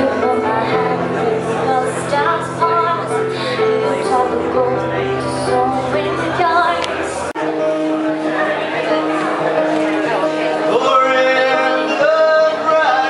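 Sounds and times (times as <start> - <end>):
instrumental accompaniment: 0.0 - 13.0
person singing: 10.6 - 13.0.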